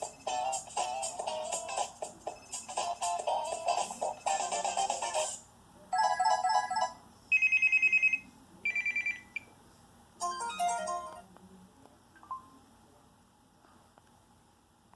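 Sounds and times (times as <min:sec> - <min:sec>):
electronic ringtone melody: 0:00.3 - 0:05.4, 0:06.0 - 0:09.4, 0:10.2 - 0:11.2.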